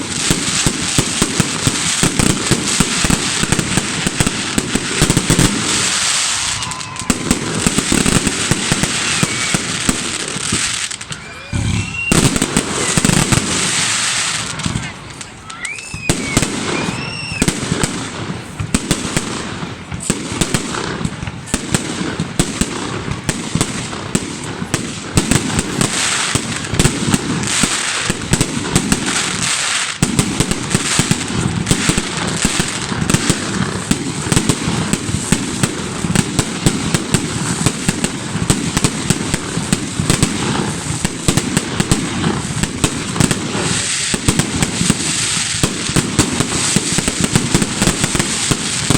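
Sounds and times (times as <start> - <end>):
firework whistle: 0.0 - 21.6
fireworks crackling and popping: 0.0 - 48.9.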